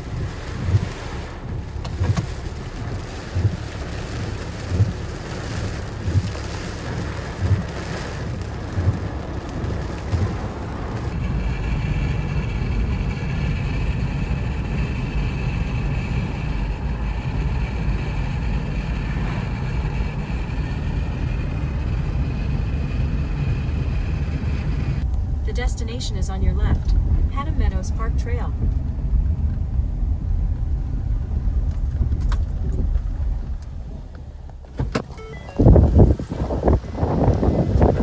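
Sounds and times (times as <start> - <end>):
wind noise: 0.0 - 34.2, 34.8 - 38.0
car driving rumble: 0.0 - 38.0
low thumps: 16.2 - 38.0.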